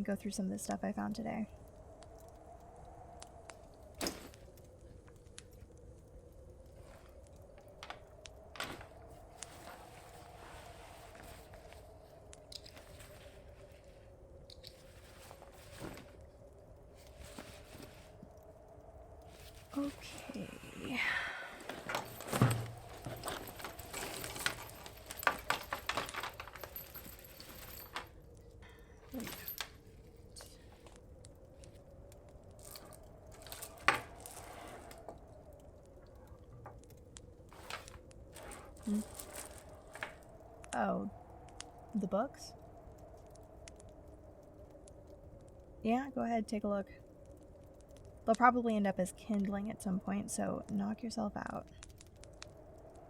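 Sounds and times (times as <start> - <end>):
fire crackling in fireplace: 0.0 - 53.0
items clinking in backpack: 21.5 - 28.2, 29.1 - 29.8, 37.5 - 40.2.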